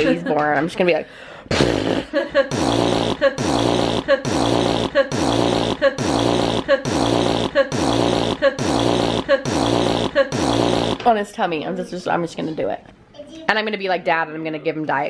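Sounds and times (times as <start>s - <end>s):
person blowing raspberries: 1.5s - 11.1s.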